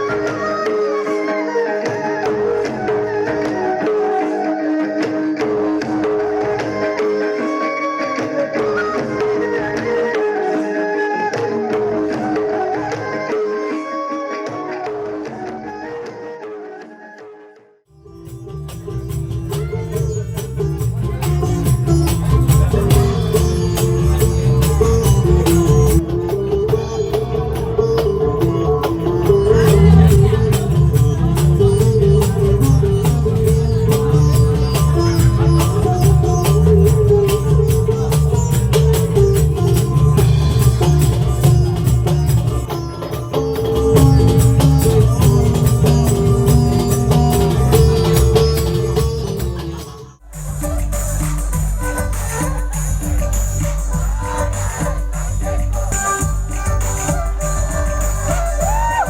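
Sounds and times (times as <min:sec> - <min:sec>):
fast dense percussion: 0:18.1 - 0:59.0
band playing live: 0:21.0 - 0:59.0.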